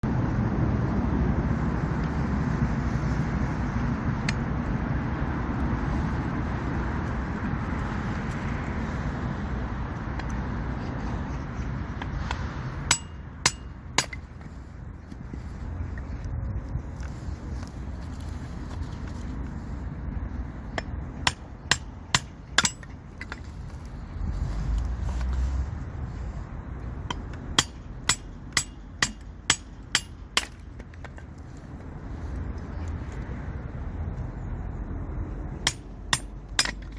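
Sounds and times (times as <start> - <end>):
hammer striking metal: 12.9 - 14.2, 21.2 - 22.9, 27.1 - 30.6, 35.6 - 36.9.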